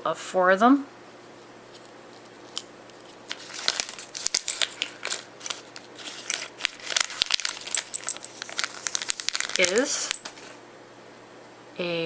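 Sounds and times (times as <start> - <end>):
plastic packaging crinkling: 1.7 - 10.6.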